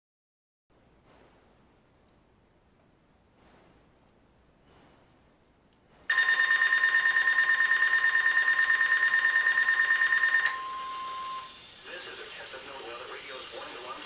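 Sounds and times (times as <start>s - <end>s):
steady warning alarm tone: 5.9s - 13.2s.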